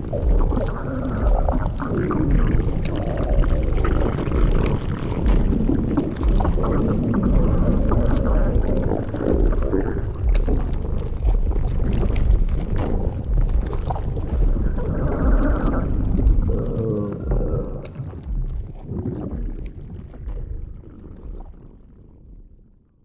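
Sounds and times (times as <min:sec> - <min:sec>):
stomach growling: 0:00.0 - 0:23.0.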